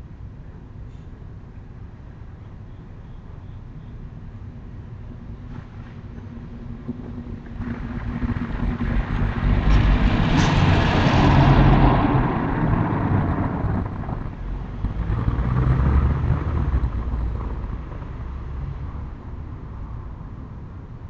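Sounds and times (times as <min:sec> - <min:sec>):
road vehicle passing by: 0:07.1 - 0:20.7.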